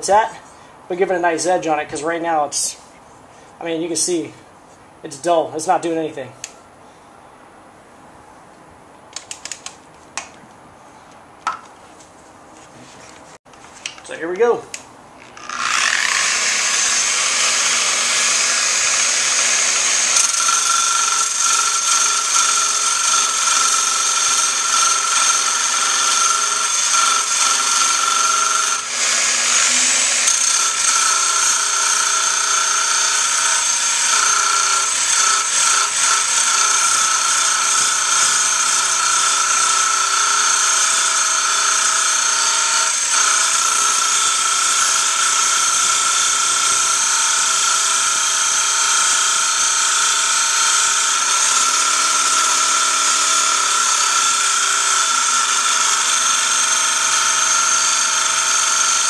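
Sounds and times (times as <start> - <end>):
angle grinder grinding steel: 15.2 - 59.0.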